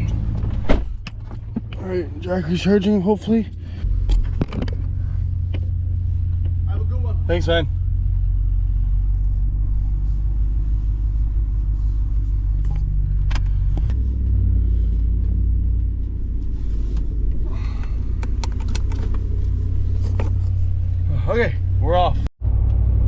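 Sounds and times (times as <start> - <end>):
vehicle engine rumbling: 0.0 - 23.0
light clicks and rattles: 16.9 - 20.8.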